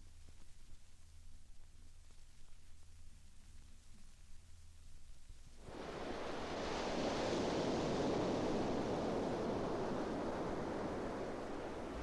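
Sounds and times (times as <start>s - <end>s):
ocean surf: 5.6s - 12.0s.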